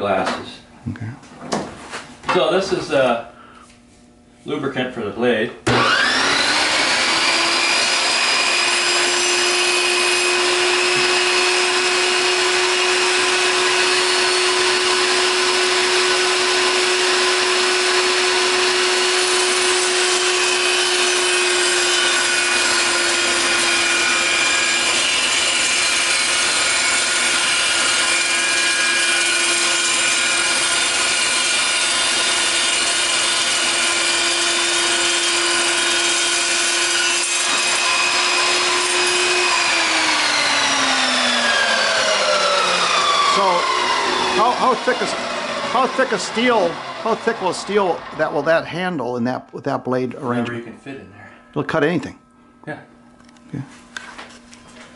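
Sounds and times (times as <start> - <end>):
chop saw cutting steel: 5.7 - 48.6.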